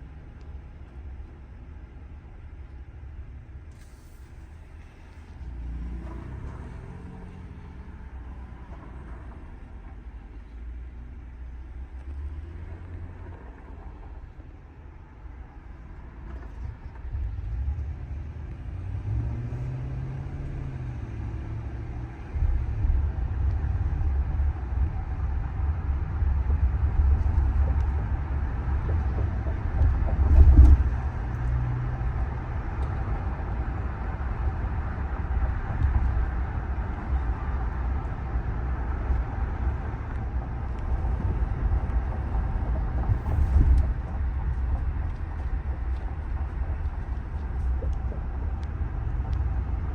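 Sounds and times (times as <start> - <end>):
road and tyre rumble: 0.0 - 49.9
wind noise: 16.4 - 49.9.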